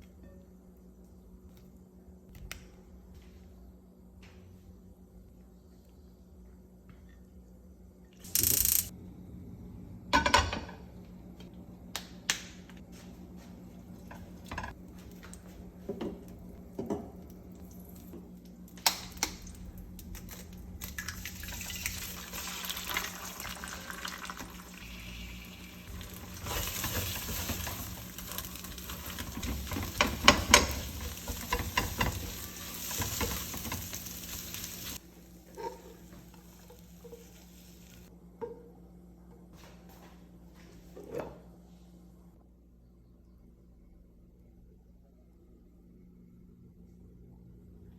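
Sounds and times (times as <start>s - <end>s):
pots and utensils clinking: 25.9s - 37.5s
faint low hum: 34.4s - 47.9s.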